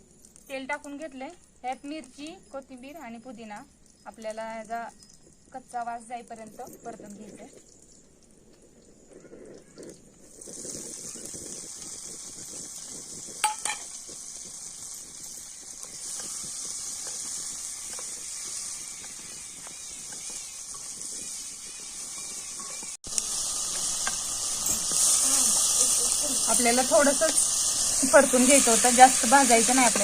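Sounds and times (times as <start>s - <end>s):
vegetables sizzling in hot oil: 10.3s - 30.0s.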